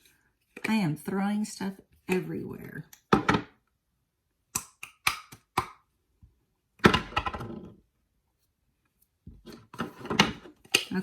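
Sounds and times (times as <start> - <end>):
items knocking and clacking: 3.1 - 3.6, 6.8 - 7.8, 9.3 - 11.0.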